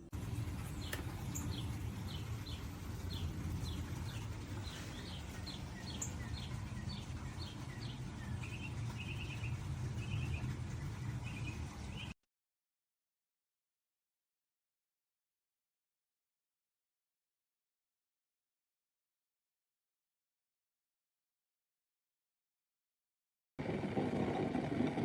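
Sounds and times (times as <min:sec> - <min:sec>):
steady low rumble: 0:00.0 - 0:12.2
small birds chirping: 0:00.1 - 0:12.2.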